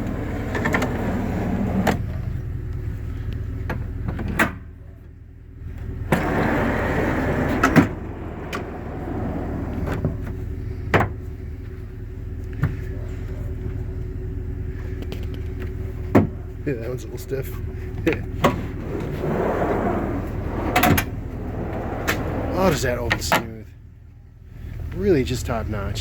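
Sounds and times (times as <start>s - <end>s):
steady low hum: 0.0s - 26.0s
drawers sliding on runners: 6.1s - 10.1s, 18.5s - 22.6s.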